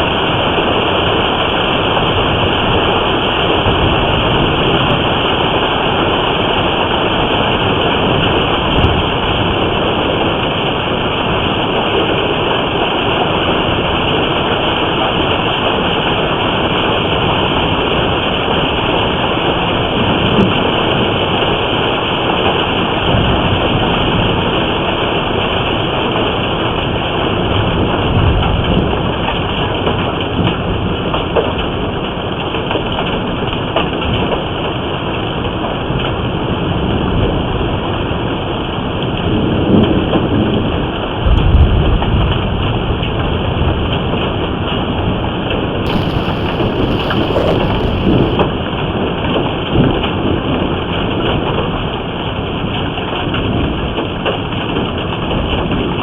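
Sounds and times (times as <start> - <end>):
low thunder rumbles: 45.9 - 48.4
rain and hail hammering down: 45.9 - 48.4.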